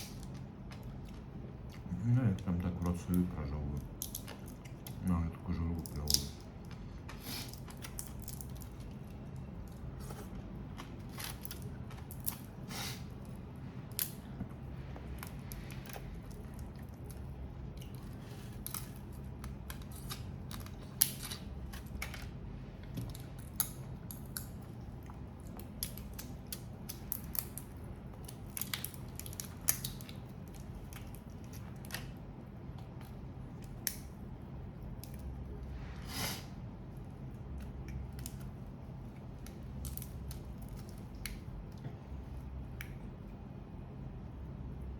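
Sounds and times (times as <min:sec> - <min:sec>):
faint low hum: 0:00.0 - 0:44.9
shells cracking and peeling: 0:03.8 - 0:05.0, 0:15.1 - 0:34.1, 0:39.2 - 0:41.5.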